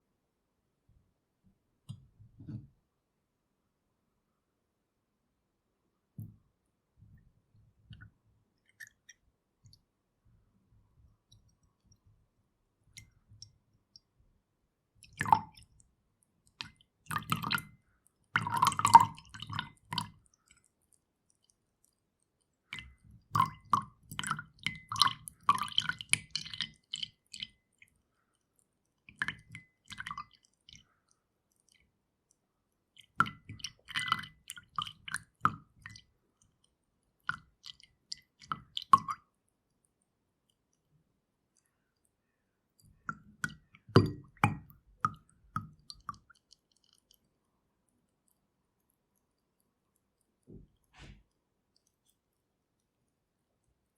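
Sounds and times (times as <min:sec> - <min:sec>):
milk glugging into a glass: 0:07.9 - 0:09.3, 0:16.5 - 0:20.6, 0:22.6 - 0:28.0, 0:33.0 - 0:36.1, 0:42.8 - 0:47.3.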